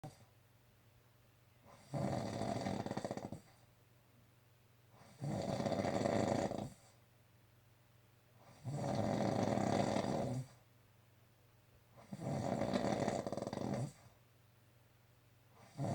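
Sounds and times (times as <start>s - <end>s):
person snoring: 1.8s - 3.4s, 5.1s - 6.8s, 8.5s - 10.5s, 12.0s - 14.0s, 15.6s - 15.9s.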